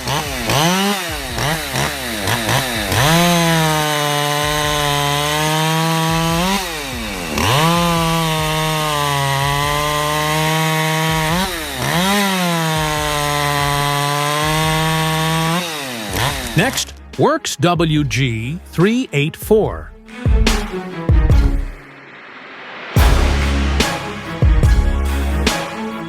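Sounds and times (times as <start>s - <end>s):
chainsaw engine revving: 0.0s - 17.2s.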